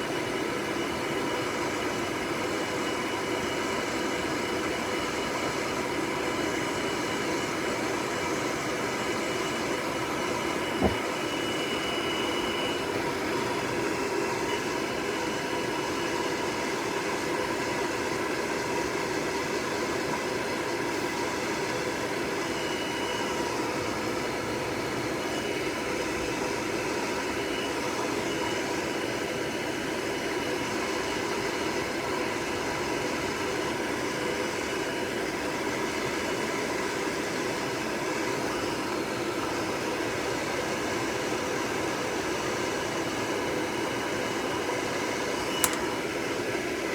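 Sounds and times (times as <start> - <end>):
hair dryer blowing: 0.0 - 22.6, 23.2 - 46.9
short click: 45.4 - 46.0.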